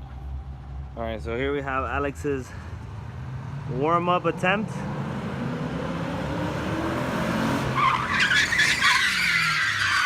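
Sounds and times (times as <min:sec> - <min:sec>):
car engine revving: 0:02.9 - 0:08.9
tyres squealing: 0:07.7 - 0:10.0.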